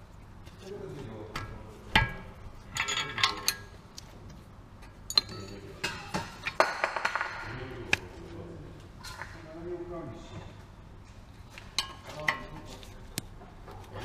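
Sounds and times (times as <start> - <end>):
metal tools clinking: 2.0 - 3.8, 4.8 - 6.2.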